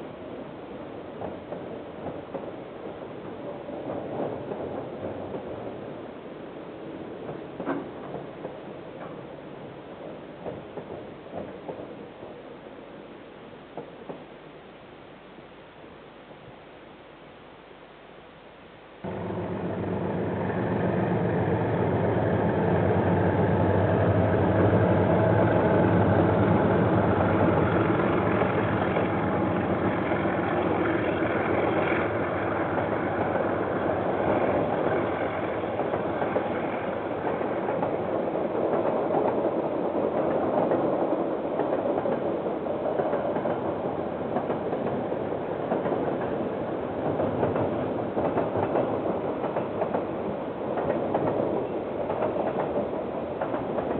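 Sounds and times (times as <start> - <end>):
train wagons rumbling on rails: 0.0 - 12.6, 13.6 - 14.4, 19.0 - 53.9
diesel locomotive engine: 19.0 - 53.9.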